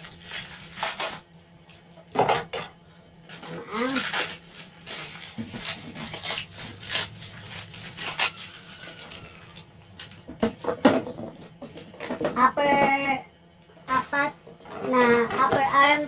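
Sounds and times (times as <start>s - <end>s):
packaging rustling: 0.0s - 1.9s, 3.3s - 10.2s.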